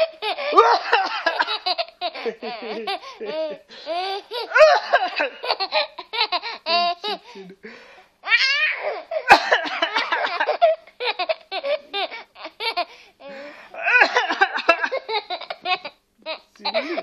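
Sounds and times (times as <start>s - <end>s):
small child laughing: 0.0s - 7.3s, 14.5s - 17.0s
child squealing: 8.3s - 9.0s.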